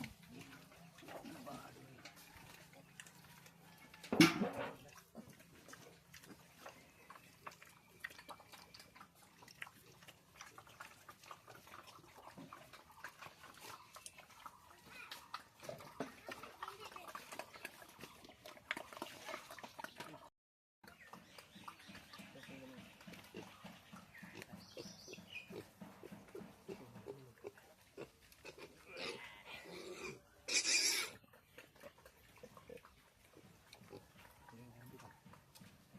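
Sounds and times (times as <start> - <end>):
pigs grunting: 21.5 - 35.9.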